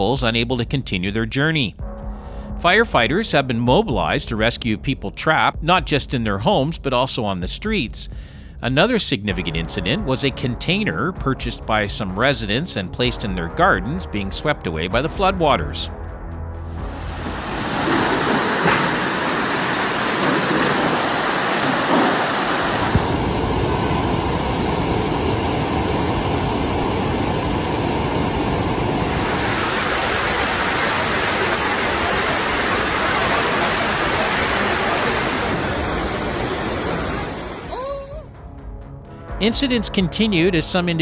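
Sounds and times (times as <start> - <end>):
floodwater rushing: 16.8 - 37.7.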